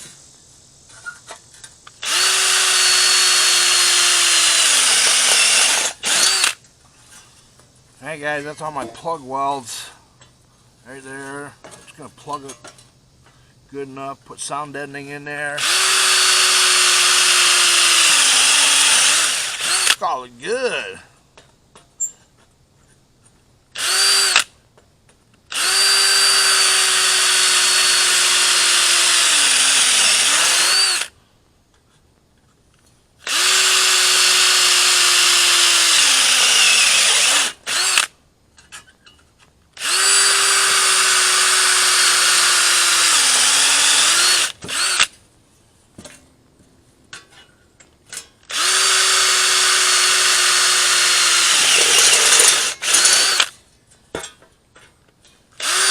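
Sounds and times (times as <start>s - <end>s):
electric drill running: 2.0s - 6.6s, 15.6s - 20.0s, 23.8s - 24.5s, 25.5s - 31.1s, 33.3s - 38.1s, 39.8s - 45.1s, 48.5s - 53.5s, 55.6s - 55.9s.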